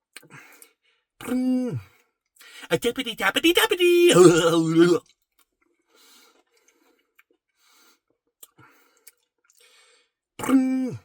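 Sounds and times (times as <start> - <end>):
faint chewing of ice cream: 5.0 - 9.8.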